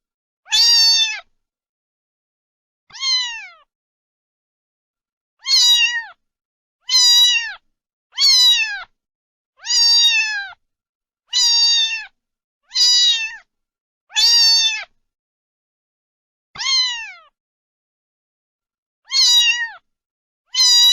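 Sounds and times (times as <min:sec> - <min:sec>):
cat meowing: 0:00.5 - 0:01.3, 0:02.9 - 0:03.7, 0:05.4 - 0:06.2, 0:06.9 - 0:07.6, 0:08.2 - 0:08.9, 0:09.6 - 0:10.6, 0:11.3 - 0:13.5, 0:14.1 - 0:14.9, 0:16.6 - 0:17.4, 0:19.1 - 0:19.8, 0:20.5 - 0:20.9.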